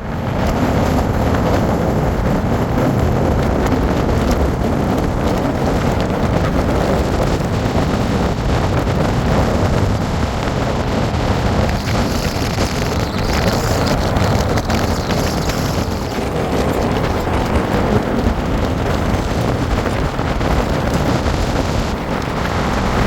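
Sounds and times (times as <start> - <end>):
low rumble: 0.0 - 23.0
loud rushing noise: 8.1 - 23.0.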